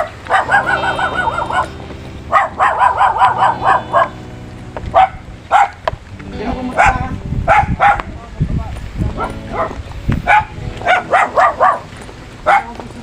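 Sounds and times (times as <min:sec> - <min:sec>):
dog barking and yipping: 0:00.0 - 0:04.2, 0:04.9 - 0:05.9, 0:06.8 - 0:08.1, 0:09.2 - 0:12.7.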